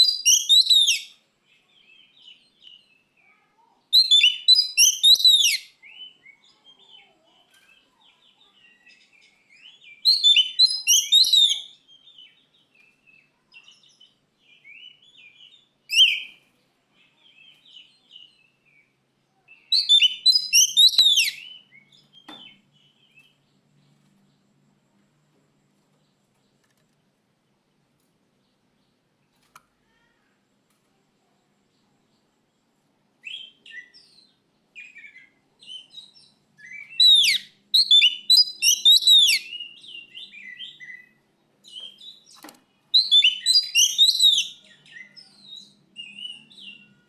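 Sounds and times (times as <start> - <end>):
bird singing fast repeated notes: 0.0 - 1.1, 4.0 - 5.7, 10.1 - 11.7, 19.8 - 21.5, 36.8 - 40.8, 43.0 - 44.8
soft bird twittering: 0.0 - 24.4, 33.2 - 47.0.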